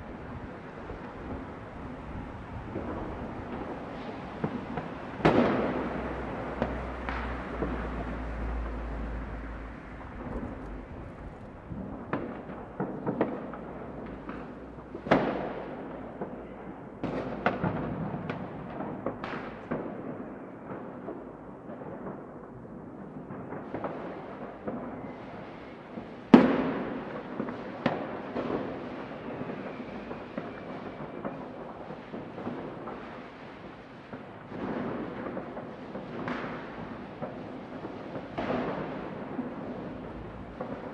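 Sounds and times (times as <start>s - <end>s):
fireworks bangs: 0.0s - 40.9s
rumble of distant explosions: 0.0s - 40.9s.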